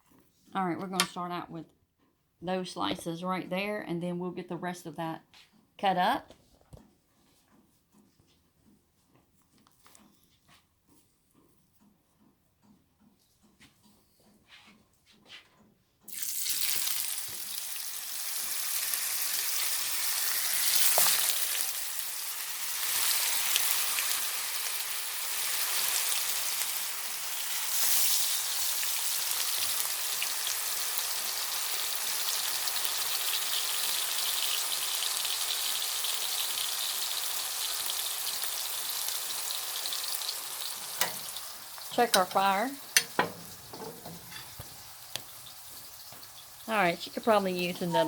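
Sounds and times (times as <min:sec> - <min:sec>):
meat sizzling in oil: 0:16.1 - 0:48.0.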